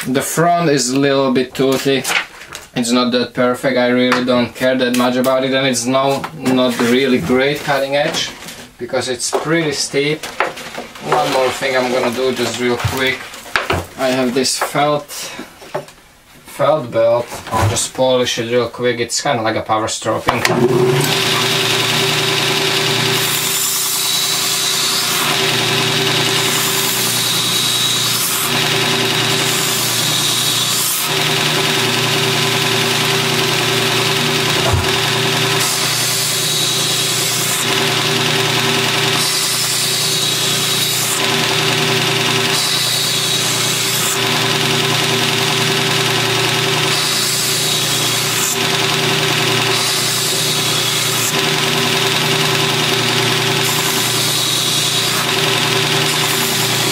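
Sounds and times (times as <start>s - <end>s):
belt grinder motor running: 20.4s - 56.9s
blade hissing on polishing belt: 20.8s - 56.9s.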